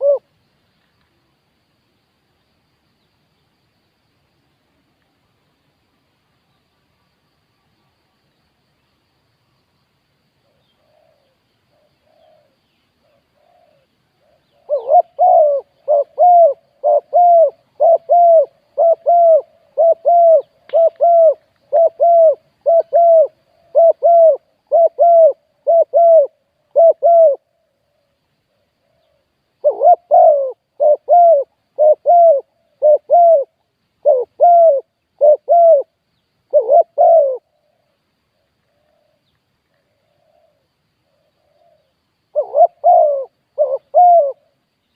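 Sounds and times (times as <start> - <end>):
dove cooing: 0.0 - 0.3, 10.5 - 28.0, 28.8 - 35.9, 36.5 - 37.9, 38.7 - 44.6.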